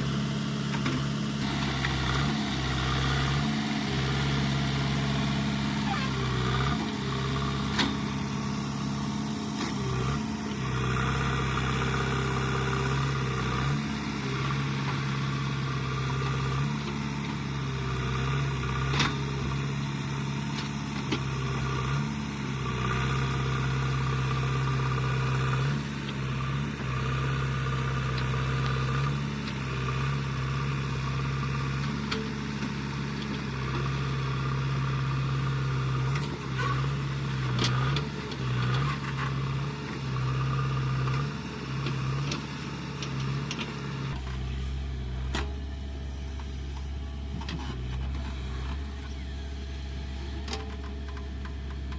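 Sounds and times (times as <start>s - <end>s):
diesel engine running: 0.0s - 51.9s.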